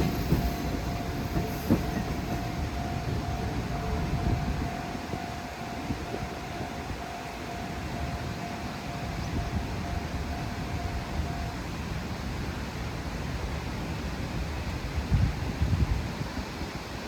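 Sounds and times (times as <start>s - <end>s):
level-crossing bell ringing: 0.0s - 11.9s.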